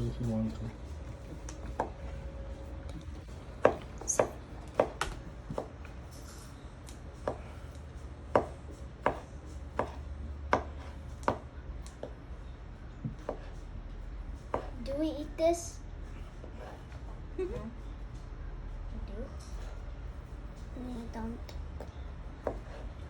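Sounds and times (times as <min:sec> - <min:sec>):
knife chopping on cutting board: 0:08.4 - 0:11.4, 0:14.5 - 0:14.8.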